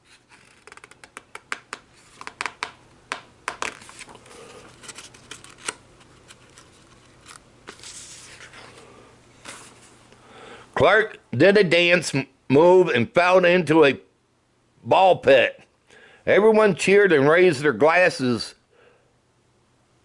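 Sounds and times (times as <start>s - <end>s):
paper rustling: 0.0s - 2.5s, 3.6s - 10.0s
paper pages turning: 0.0s - 2.7s, 3.6s - 10.0s.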